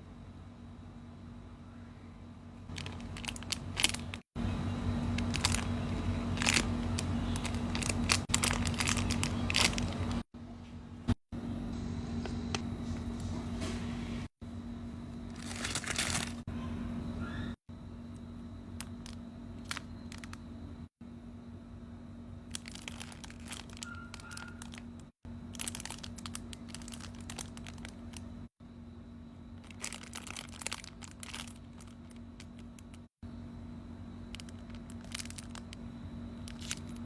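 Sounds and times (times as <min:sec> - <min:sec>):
steady low hum: 0:00.0 - 0:37.0
foam toys crinkling when squeezed: 0:02.7 - 0:04.2, 0:05.1 - 0:10.2, 0:15.3 - 0:16.4, 0:18.8 - 0:20.4, 0:22.5 - 0:28.3, 0:29.6 - 0:33.0, 0:34.3 - 0:35.8, 0:36.4 - 0:37.0.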